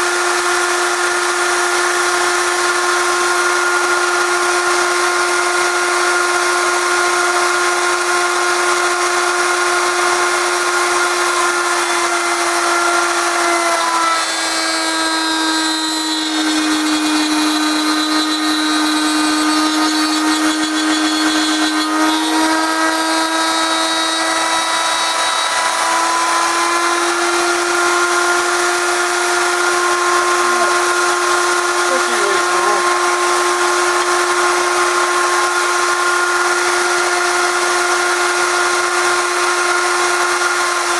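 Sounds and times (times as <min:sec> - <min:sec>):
electric router whining: 0:00.0 - 0:40.9
man talking: 0:30.4 - 0:31.0, 0:31.8 - 0:33.2.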